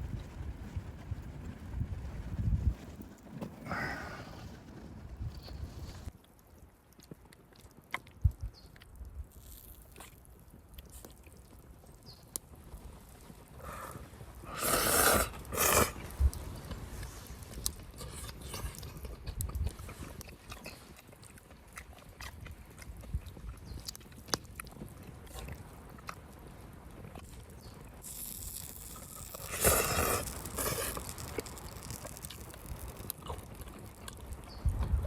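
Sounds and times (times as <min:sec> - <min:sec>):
person chewing with clicks: 0:06.2 - 0:12.5, 0:14.7 - 0:26.3, 0:28.0 - 0:35.0.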